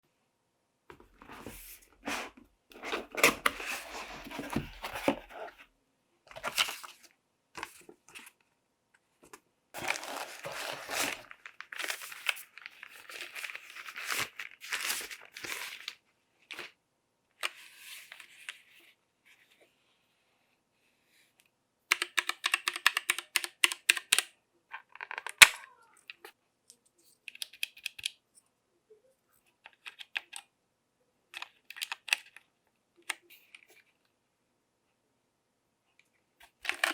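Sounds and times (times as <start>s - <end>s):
packaging crinkling and tearing: 9.8s - 16.7s, 36.6s - 36.9s.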